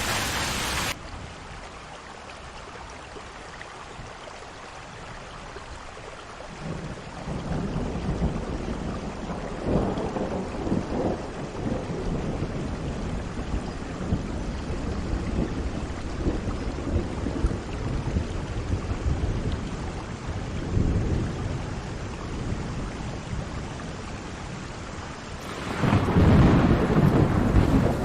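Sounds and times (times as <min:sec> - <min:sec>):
heavy rain: 0:00.0 - 0:28.0
rolling thunder: 0:06.7 - 0:19.6, 0:25.4 - 0:28.0.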